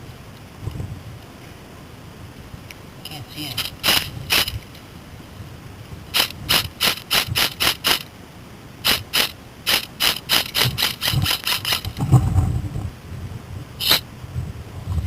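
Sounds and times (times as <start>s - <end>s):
airsoft gun shots: 3.6s - 4.6s, 6.2s - 8.1s, 8.8s - 11.9s.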